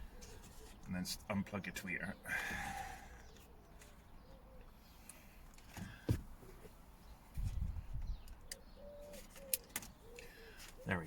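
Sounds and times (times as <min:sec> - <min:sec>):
bird cooing faintly: 0:08.1 - 0:11.0.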